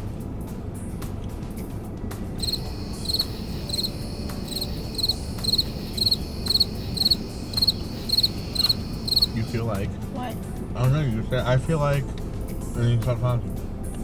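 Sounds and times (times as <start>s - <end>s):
low steady rumble: 2.3s - 12.7s
crickets chirping: 2.4s - 9.7s.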